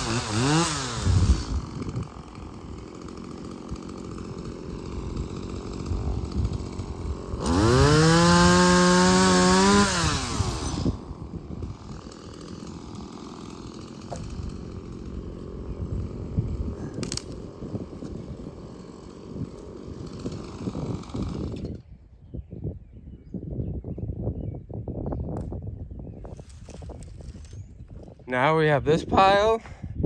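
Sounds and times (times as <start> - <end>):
chainsaw idling and revving: 0.0 - 21.9.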